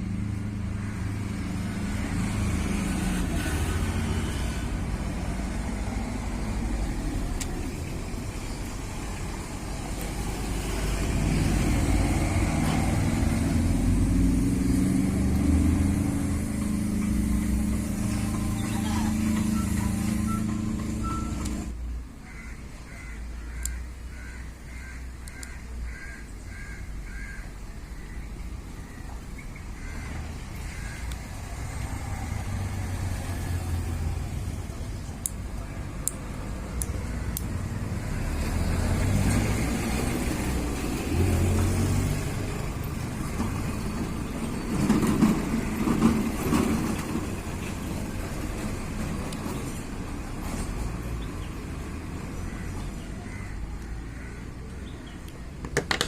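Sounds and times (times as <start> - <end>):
low engine rumble: 0.0 - 56.0
electronic beeping: 18.3 - 21.7.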